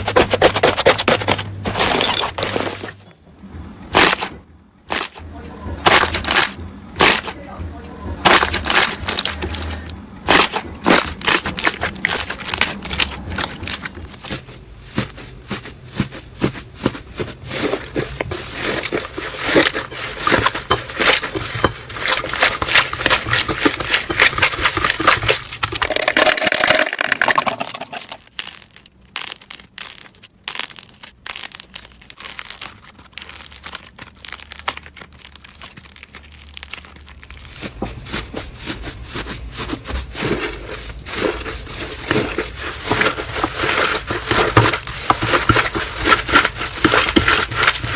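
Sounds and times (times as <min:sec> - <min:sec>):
slime crackling and popping: 0:08.2 - 0:14.3, 0:19.4 - 0:38.7.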